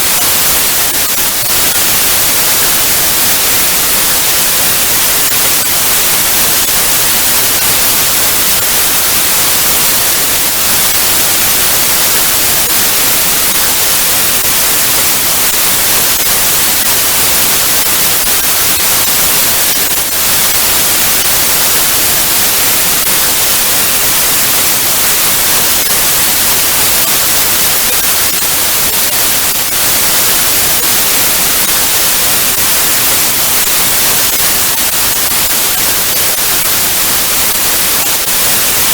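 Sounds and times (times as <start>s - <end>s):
television static hiss: 0.0s - 38.9s.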